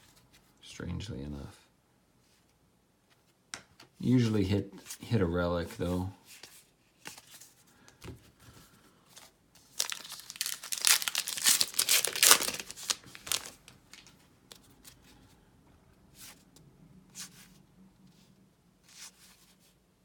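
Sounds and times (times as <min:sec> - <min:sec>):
faint card rustles: 0:02.2 - 0:15.4
wrapper tearing and crinkling: 0:09.6 - 0:14.1.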